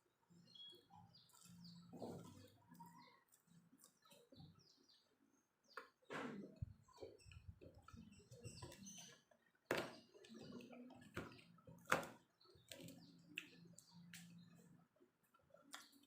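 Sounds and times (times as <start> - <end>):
chewing crunchy fries: 1.2 - 4.4, 10.2 - 16.0.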